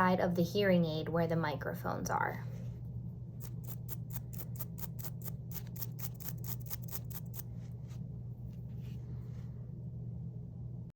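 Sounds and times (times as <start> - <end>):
brush scrubbing hearing aid: 3.4 - 8.0.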